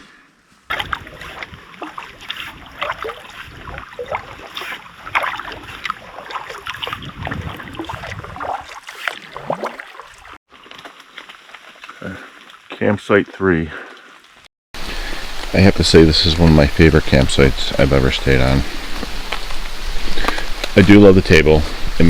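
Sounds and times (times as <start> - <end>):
paddle splashing in water: 0.7 - 15.4
water dripping against canoe: 0.7 - 15.6.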